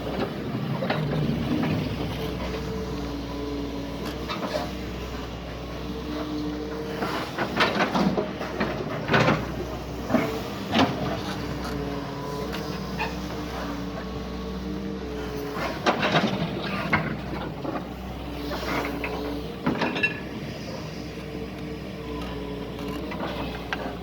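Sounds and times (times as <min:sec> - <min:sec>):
excavator engine with hydraulic whine: 0:00.0 - 0:24.0.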